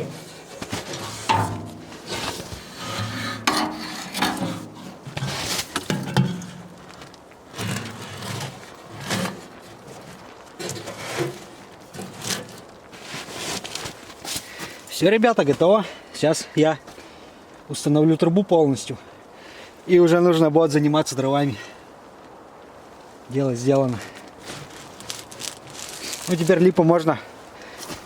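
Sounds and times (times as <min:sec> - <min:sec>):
materials knocking and scraping: 0:00.0 - 0:14.4.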